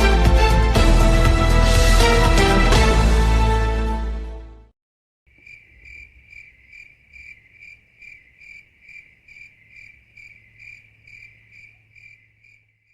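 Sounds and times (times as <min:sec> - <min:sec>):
insect chirping: 0:05.3 - 0:12.9.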